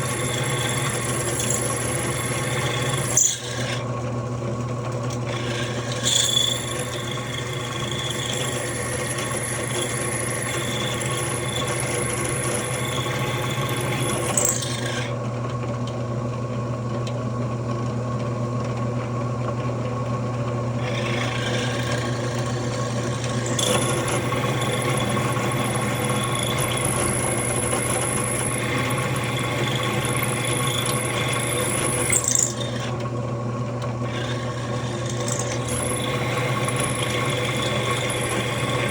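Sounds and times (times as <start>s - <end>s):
drill bit cutting metal squeal: 0.0s - 3.8s, 5.2s - 15.2s, 20.8s - 33.0s, 34.0s - 38.9s
drill press motor hum: 0.0s - 16.0s, 18.7s - 38.9s.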